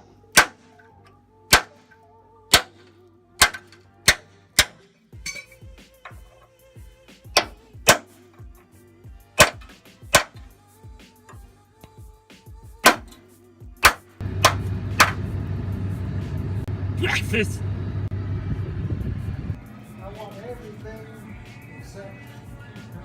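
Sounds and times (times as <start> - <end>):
soft background music: 0.0 - 15.0, 19.5 - 23.0
hammer striking steel punch: 0.3 - 0.7, 1.5 - 1.8, 2.5 - 2.8, 3.4 - 5.5, 7.4 - 8.1, 9.4 - 10.4, 12.8 - 13.2, 13.8 - 15.2.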